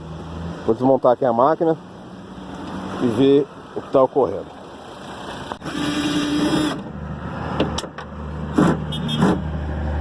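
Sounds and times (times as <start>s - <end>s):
sharp clicks and knocks: 7.6s - 9.4s.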